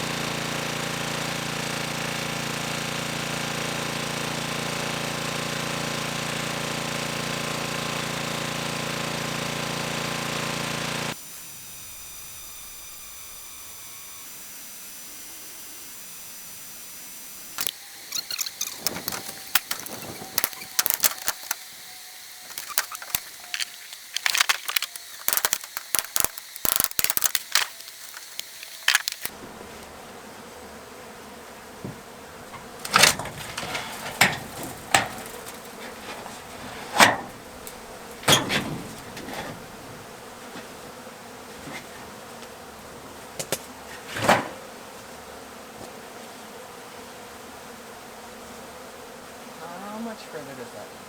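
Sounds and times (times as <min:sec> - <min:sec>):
bee colony buzzing: 0:00.0 - 0:51.0
bee flying past: 0:00.0 - 0:51.0
wooden boards splintering: 0:17.6 - 0:29.4, 0:31.8 - 0:40.7.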